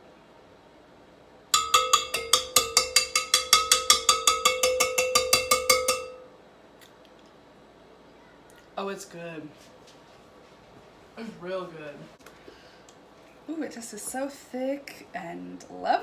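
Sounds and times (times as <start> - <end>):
whisk knocking against bowl: 1.6 - 6.2
bowl ringing: 1.6 - 6.3.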